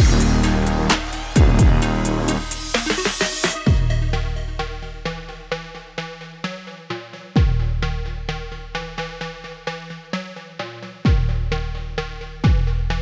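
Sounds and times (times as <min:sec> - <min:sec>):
deep bass hits falling in pitch: 0:00.0 - 0:03.1, 0:03.7 - 0:05.7
plucked synthesizer notes: 0:00.0 - 0:06.5.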